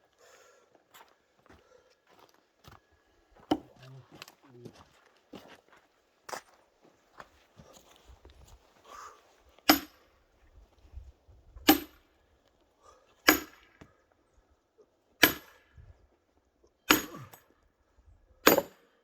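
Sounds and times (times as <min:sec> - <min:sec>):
axe splitting logs: 0:03.4 - 0:03.8, 0:09.7 - 0:10.1, 0:11.7 - 0:12.0, 0:13.3 - 0:13.9, 0:15.2 - 0:15.6, 0:16.9 - 0:17.4, 0:18.4 - 0:18.9.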